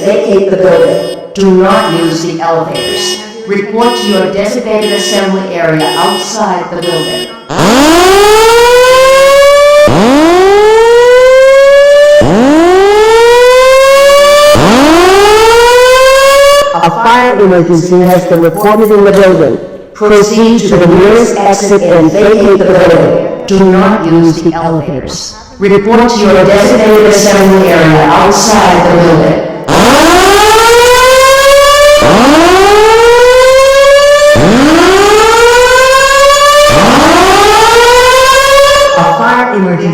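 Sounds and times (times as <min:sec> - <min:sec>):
spoken evacuation messages: 0:00.0 - 0:07.8, 0:16.6 - 0:29.6, 0:38.8 - 0:39.9
fire alarm whoop tone: 0:00.6 - 0:16.8, 0:29.7 - 0:39.2.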